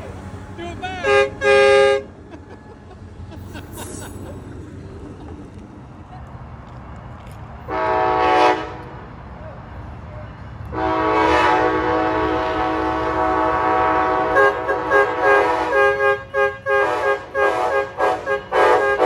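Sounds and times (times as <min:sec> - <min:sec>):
low rumble of passing train: 0:00.0 - 0:19.0
train horn blasting: 0:01.0 - 0:02.1, 0:07.7 - 0:09.1, 0:10.7 - 0:19.0.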